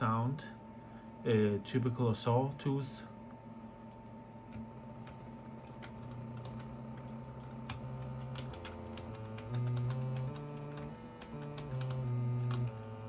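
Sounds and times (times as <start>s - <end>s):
keys clicking on keyboard: 3.9s - 12.8s
low buzzing synth tone: 6.0s - 13.0s.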